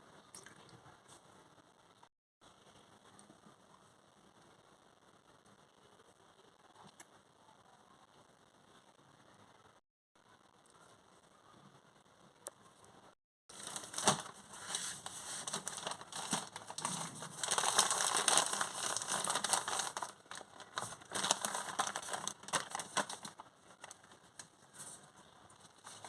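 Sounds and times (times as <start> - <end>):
plastic packaging crinkling: 13.5 - 26.0.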